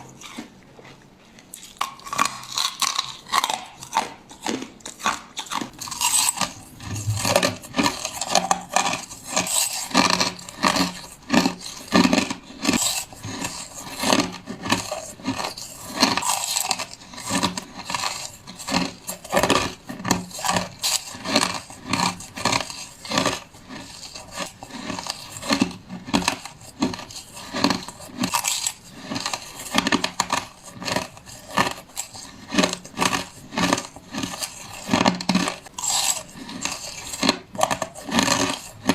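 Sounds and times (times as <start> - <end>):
crushed ice crunched between teeth: 1.6 - 38.9.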